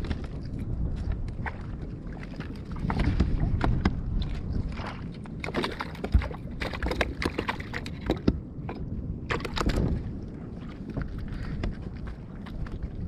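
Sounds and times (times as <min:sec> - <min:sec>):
water sloshing around kayak: 0:00.0 - 0:13.0.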